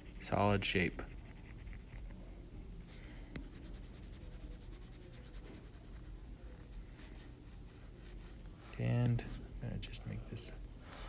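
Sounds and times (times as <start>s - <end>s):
pencil scratching on paper: 3.4s - 6.1s.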